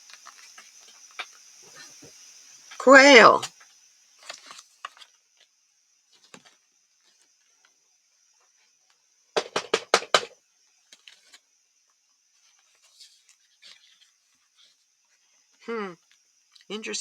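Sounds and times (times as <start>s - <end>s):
sharp knocks: 9.4s - 10.3s.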